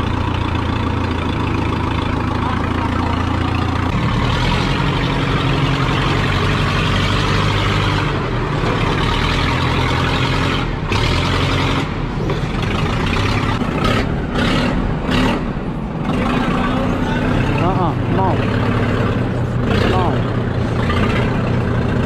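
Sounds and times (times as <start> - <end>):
backhoe engine humming: 0.0 - 22.0.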